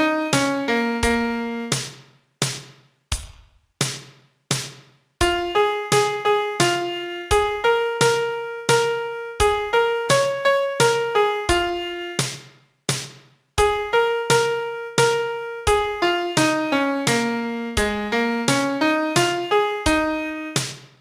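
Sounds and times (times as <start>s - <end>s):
piano melody: 0.0s - 1.8s, 5.2s - 12.3s, 13.6s - 20.7s.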